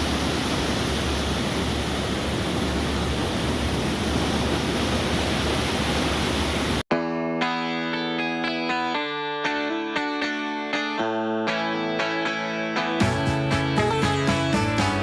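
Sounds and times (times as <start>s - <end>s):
steady rushing noise: 0.0s - 6.8s.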